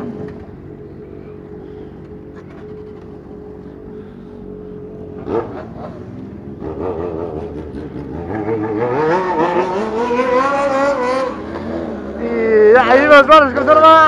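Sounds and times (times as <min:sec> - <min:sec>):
motorcycle engines running: 0:00.0 - 0:14.0
engine revving: 0:04.9 - 0:14.0.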